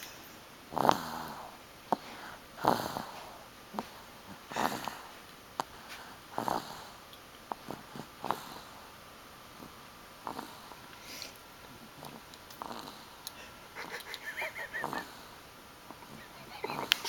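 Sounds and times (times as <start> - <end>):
baby snoring: 0.7 - 5.1, 6.3 - 8.7, 9.6 - 10.7, 12.0 - 13.1, 14.4 - 15.3.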